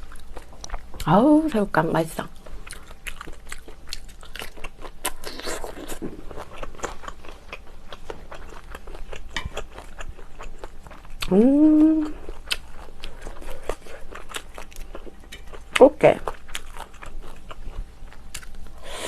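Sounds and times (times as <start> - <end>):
shrimp being chewed: 2.4 - 11.3, 12.0 - 18.8.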